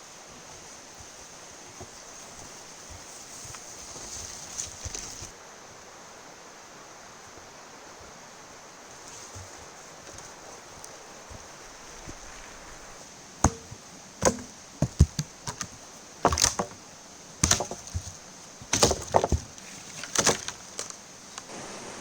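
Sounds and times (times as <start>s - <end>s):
firewood cracking and knocking: 11.4s - 21.5s.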